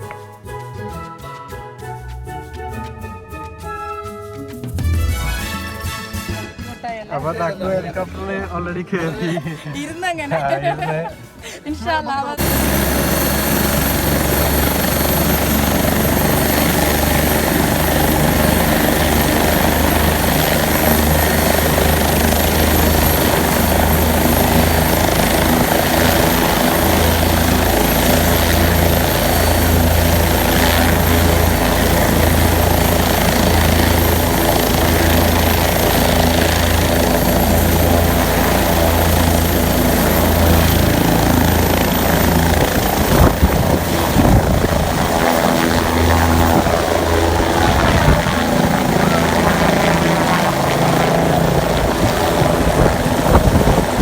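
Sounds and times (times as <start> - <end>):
helicopter rotor and engine: 7.1 - 54.0
high engine whine: 12.4 - 54.0.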